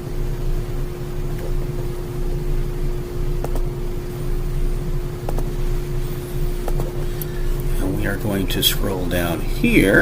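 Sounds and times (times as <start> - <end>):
fan humming: 0.0 - 10.0
computer mouse clicks: 3.4 - 3.7, 5.3 - 5.5, 6.6 - 7.3.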